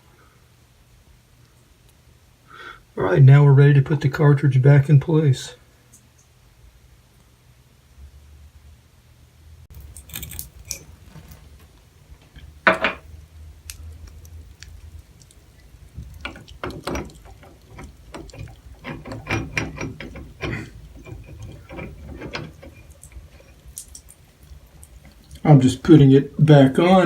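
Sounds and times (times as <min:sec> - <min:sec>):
metal clicks and clinks: 0:09.7 - 0:11.4, 0:12.2 - 0:25.8.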